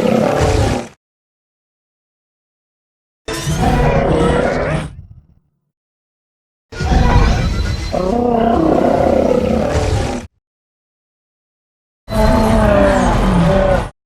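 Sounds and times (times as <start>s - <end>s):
deep rumbling monster roar: 3.3s - 5.4s, 6.8s - 10.3s, 12.1s - 14.0s.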